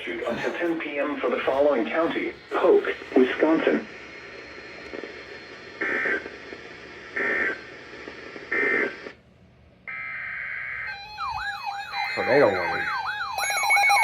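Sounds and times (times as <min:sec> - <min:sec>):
radio static hiss: 0:00.0 - 0:09.2, 0:12.0 - 0:13.0
data tone bursts: 0:10.9 - 0:14.0.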